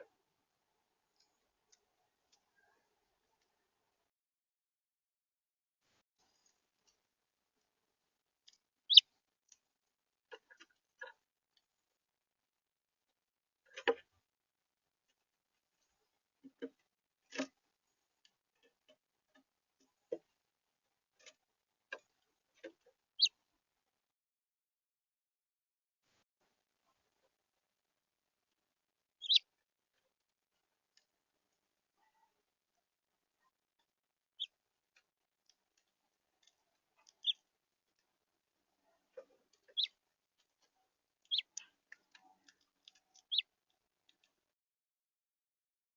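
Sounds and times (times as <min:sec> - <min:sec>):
faint bird ticking notes: 0:29.2 - 0:29.4, 0:41.2 - 0:43.5.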